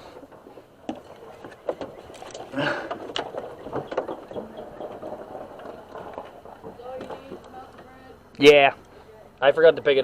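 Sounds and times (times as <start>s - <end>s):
clicks and knocks in engine bay: 0.2s - 8.0s.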